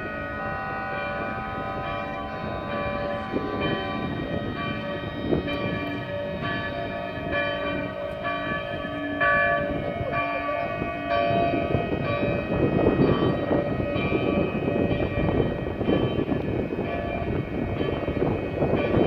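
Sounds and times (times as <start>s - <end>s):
held siren tones: 0.0s - 10.8s
church bells ringing: 0.0s - 19.0s.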